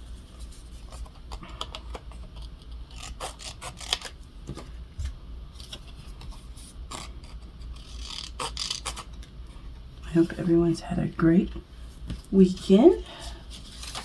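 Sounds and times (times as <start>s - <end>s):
paper crinkling and rustling: 13.5s - 14.0s.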